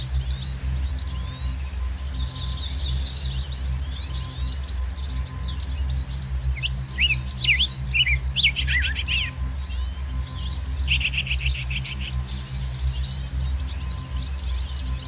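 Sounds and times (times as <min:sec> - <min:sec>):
background music with low bass: 0:00.0 - 0:15.0
small birds chirping: 0:00.0 - 0:15.0
bird trills: 0:06.5 - 0:13.1.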